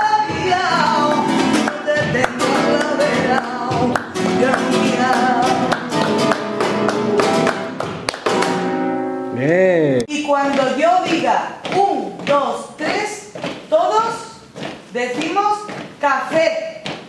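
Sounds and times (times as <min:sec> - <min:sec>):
person singing: 0:00.0 - 0:06.8, 0:09.3 - 0:10.1
acoustic guitar strumming: 0:00.0 - 0:10.0.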